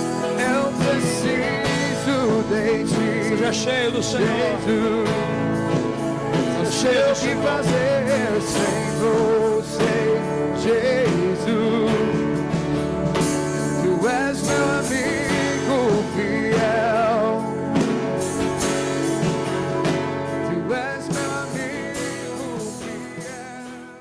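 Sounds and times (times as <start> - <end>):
person singing long notes: 0.0 - 12.6, 13.7 - 18.1
band playing guitar chords: 0.0 - 24.0.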